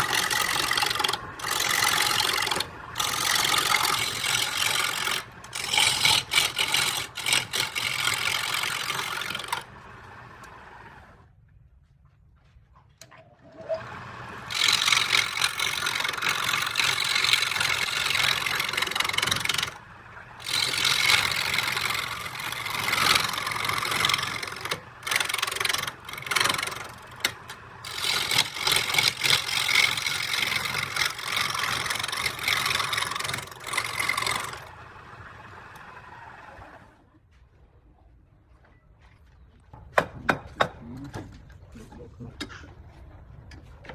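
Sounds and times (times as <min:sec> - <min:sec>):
power tool working wood: 0:00.0 - 0:11.2, 0:13.5 - 0:37.0
steady motor hum: 0:00.0 - 0:11.6, 0:13.4 - 0:37.4.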